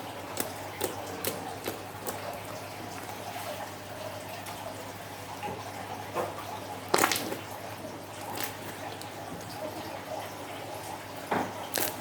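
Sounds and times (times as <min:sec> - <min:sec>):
slime squishing: 0:00.0 - 0:03.2, 0:06.9 - 0:07.5, 0:08.2 - 0:09.2, 0:11.7 - 0:12.0.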